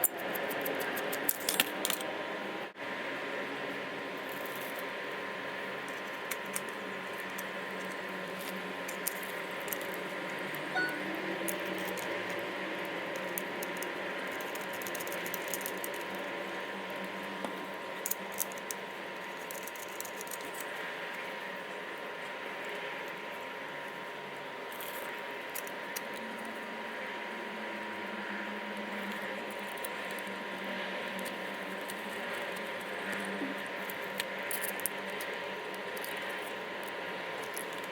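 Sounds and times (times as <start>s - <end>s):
steady hum: 4.8s - 19.5s.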